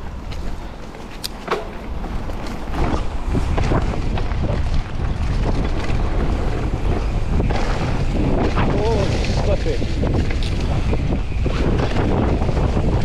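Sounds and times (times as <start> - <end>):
bike tyre noise on dirt: 0.0 - 13.0
wind buffeting microphone: 0.0 - 13.0
bike knocks and rattles: 0.2 - 13.0.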